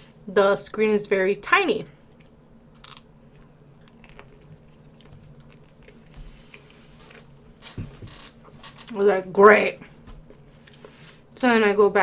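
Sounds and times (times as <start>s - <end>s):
low steady hum: 0.0s - 12.0s
person chewing: 2.2s - 7.3s.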